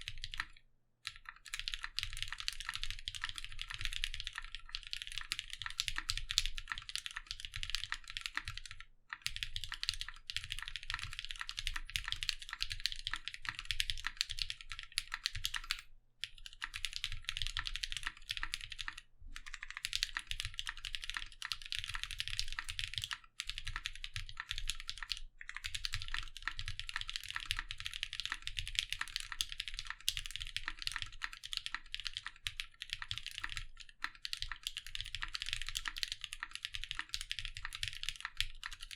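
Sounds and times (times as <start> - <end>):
fast typing on mechanical keyboard: 0.0 - 38.9.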